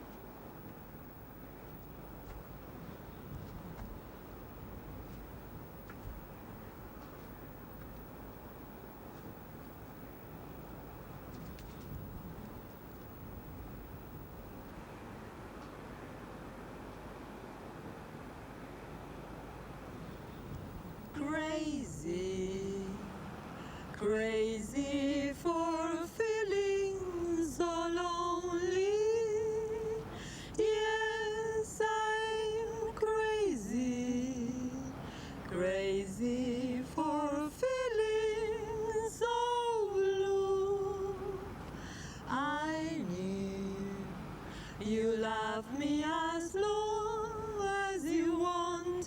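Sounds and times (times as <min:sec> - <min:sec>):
woman singing unaccompanied: 0:20.4 - 0:49.0.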